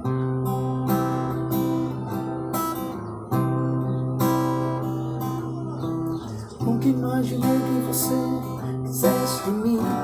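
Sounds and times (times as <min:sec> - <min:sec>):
acoustic guitar strumming chords: 0:00.0 - 0:10.0.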